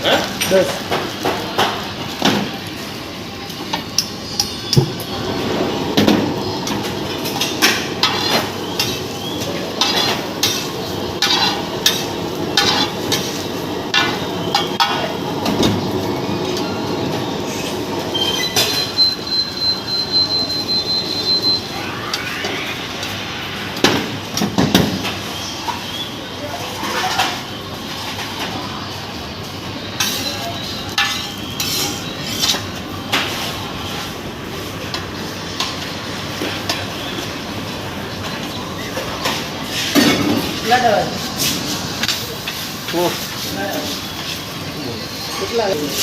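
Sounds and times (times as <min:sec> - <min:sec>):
metal spatula scraping griddle: 0:07.3 - 0:09.0, 0:09.6 - 0:14.9, 0:30.9 - 0:32.6.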